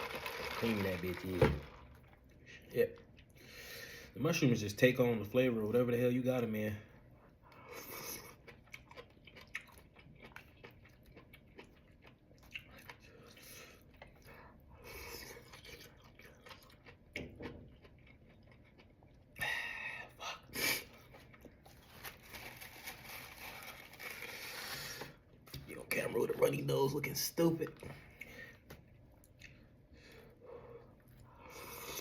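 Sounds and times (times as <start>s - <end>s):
person chewing food: 7.3s - 25.6s, 27.8s - 32.0s.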